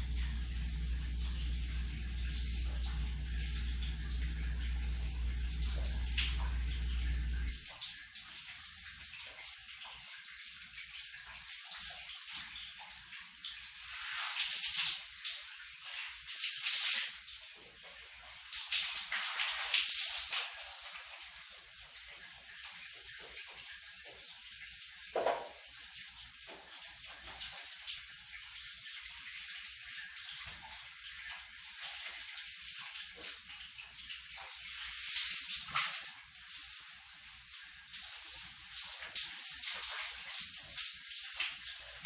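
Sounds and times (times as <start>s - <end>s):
low hum: 0.0s - 7.6s
shower spray hissing: 0.0s - 7.7s, 13.8s - 15.0s.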